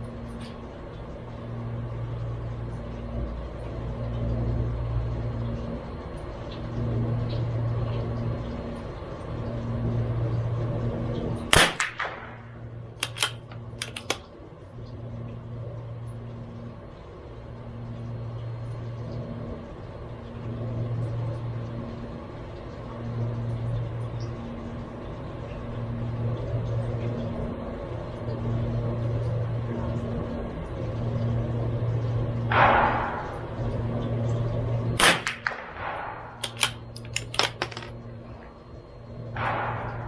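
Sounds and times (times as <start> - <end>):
low hum: 0.0 - 40.0
rifle bolt clicks: 11.5 - 12.2, 13.0 - 14.3, 36.4 - 37.9
rifle shot: 11.5 - 14.2, 35.0 - 37.9.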